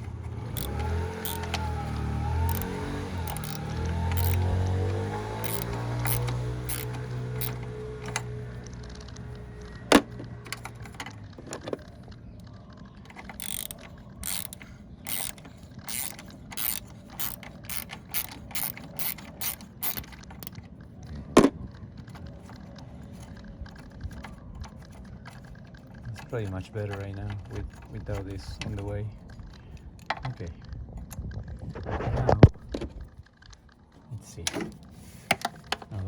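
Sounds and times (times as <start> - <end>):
ratchet wrench clicking: 0.0 - 8.3, 13.1 - 20.6.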